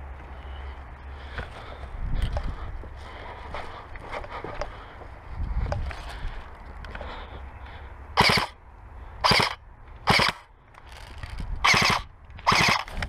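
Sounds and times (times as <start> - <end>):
airsoft rifle firing bursts: 8.2 - 8.6, 9.2 - 10.5, 11.6 - 13.0.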